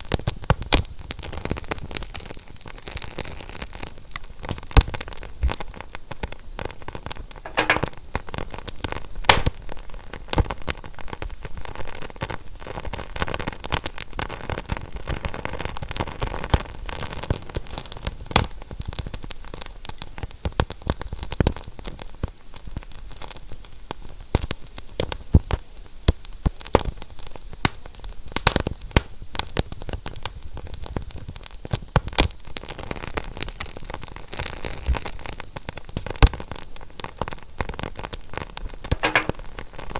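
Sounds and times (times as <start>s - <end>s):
fire crackling: 9.3s - 9.7s.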